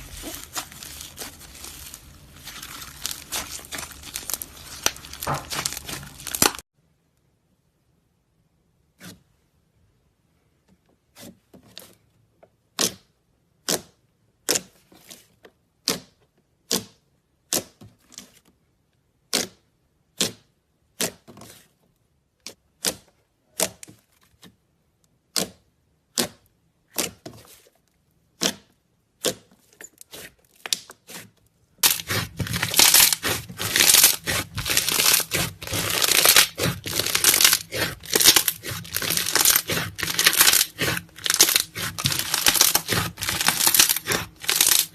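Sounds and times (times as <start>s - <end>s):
dense crackling and crinkling: 0.0s - 6.7s, 29.6s - 44.9s.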